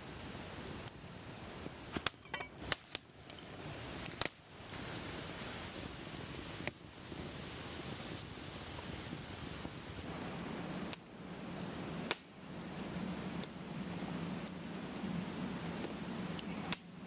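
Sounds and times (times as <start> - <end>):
steady background hiss: 0.0 - 17.0
metal utensils clinking: 2.2 - 2.6.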